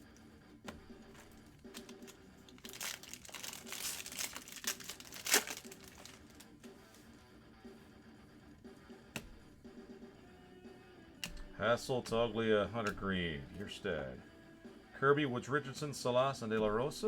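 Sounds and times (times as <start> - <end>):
foil wrapper crinkling: 1.0 - 7.1
loud foil crackle: 1.1 - 7.1.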